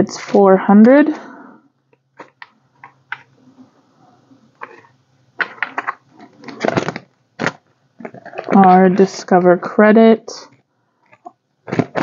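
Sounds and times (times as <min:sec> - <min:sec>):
paper rustling and clicks: 0:04.6 - 0:08.7.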